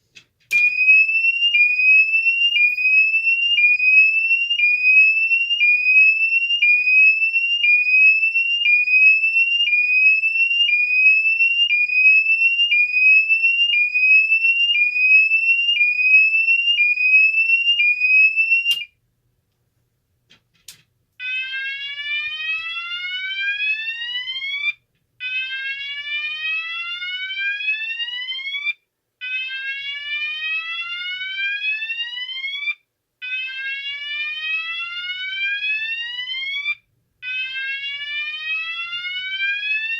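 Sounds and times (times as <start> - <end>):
alarm switch click: 0.5 - 0.9, 18.6 - 18.9
muffled fire alarm sweeping tone: 0.5 - 7.8.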